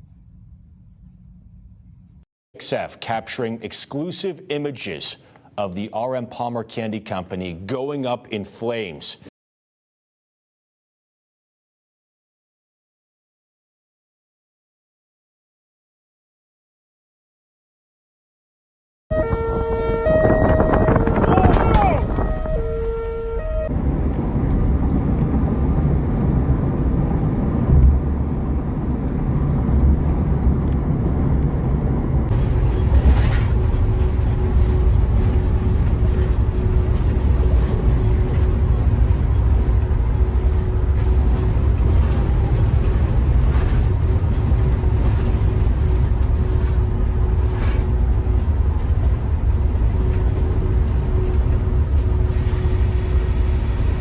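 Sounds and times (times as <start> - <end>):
faint constant hum: 0.0 - 8.2.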